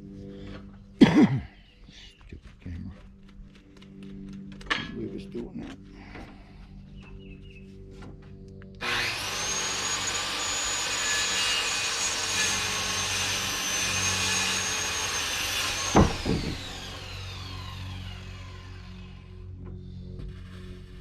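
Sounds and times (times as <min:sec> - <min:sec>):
power saw cutting board: 0:08.8 - 0:21.0
sharp knocks: 0:15.8 - 0:16.8.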